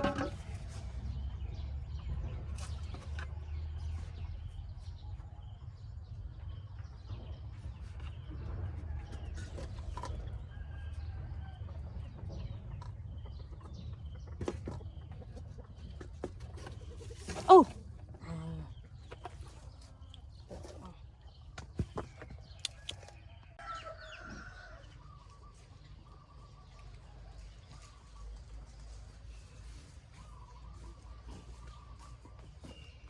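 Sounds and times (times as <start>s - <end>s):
chickens clucking: 8.7s - 18.1s, 18.7s - 33.0s.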